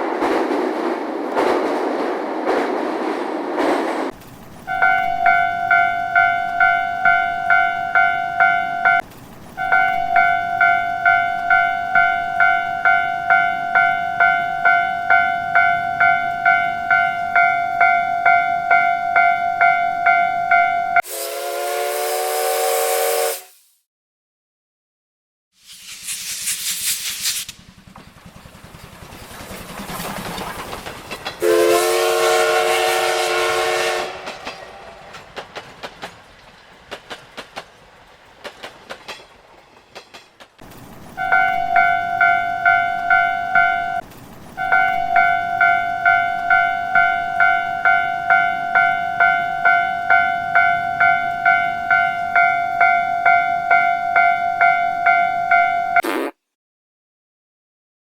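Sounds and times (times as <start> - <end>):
wheel clatter on rail joints: 0.0 - 6.8, 8.9 - 10.4, 27.6 - 31.4, 34.2 - 43.3
train rumble: 0.0 - 18.8, 25.8 - 55.2
railway crossing bell ringing: 4.6 - 21.0, 41.1 - 44.0, 44.6 - 56.0
train horn blast: 21.0 - 23.6, 31.4 - 34.9
hiss: 25.6 - 27.7.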